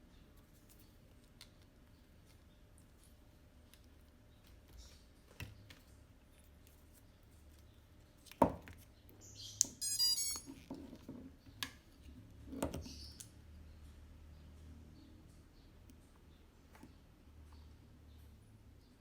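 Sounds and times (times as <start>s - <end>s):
quick electronic beeps: 9.8s - 10.5s.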